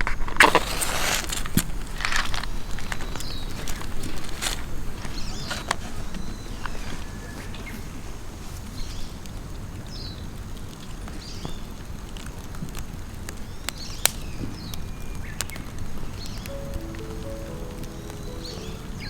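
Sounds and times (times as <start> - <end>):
birds chirping: 16.5 - 19.0.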